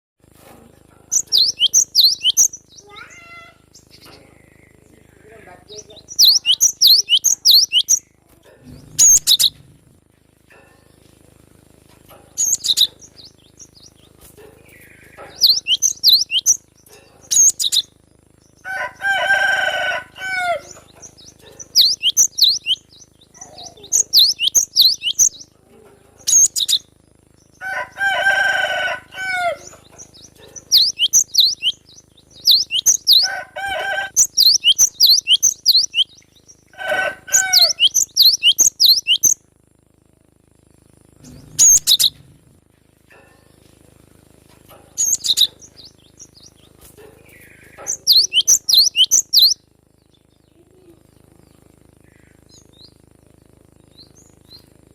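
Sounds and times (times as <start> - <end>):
bird chirping song: 1.1 - 9.8, 12.1 - 39.5, 40.8 - 42.5, 44.7 - 54.9
lower longer bird calls: 14.8 - 16.6, 21.6 - 25.5, 30.7 - 39.4, 47.6 - 49.7.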